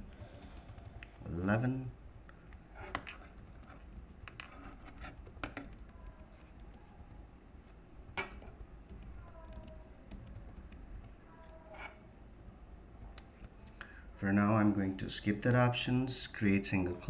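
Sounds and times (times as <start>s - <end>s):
computer keyboard keystrokes: 2.2s - 7.2s, 8.4s - 11.6s, 12.4s - 13.7s.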